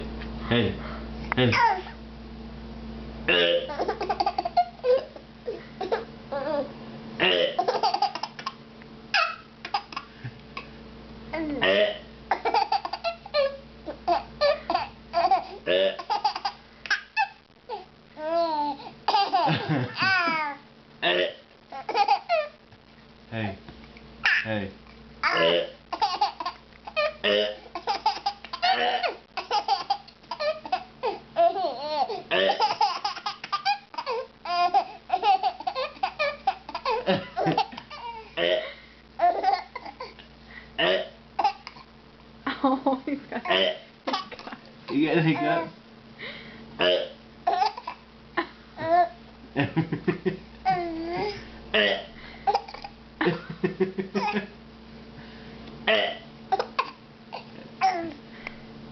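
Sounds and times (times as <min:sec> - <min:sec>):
baby laughing: 0:03.7 - 0:06.7, 0:07.6 - 0:10.1, 0:12.3 - 0:20.6, 0:21.7 - 0:22.6, 0:25.2 - 0:38.3, 0:39.2 - 0:40.2, 0:41.4 - 0:41.8, 0:44.1 - 0:45.7, 0:47.5 - 0:48.0, 0:50.6 - 0:51.4, 0:52.5 - 0:53.0, 0:54.0 - 0:54.5, 0:56.5 - 0:58.2.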